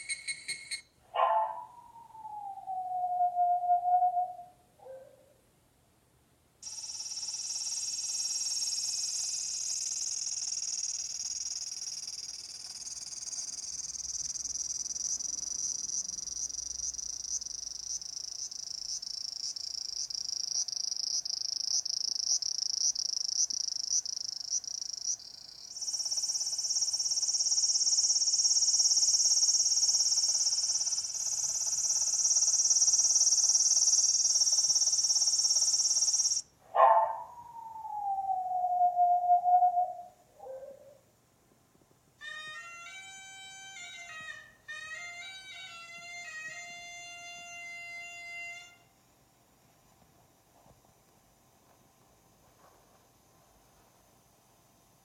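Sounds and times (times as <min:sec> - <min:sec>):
frogs croaking: 0:06.6 - 0:36.4
insect chorus buzzing and chirping: 0:06.6 - 0:36.5.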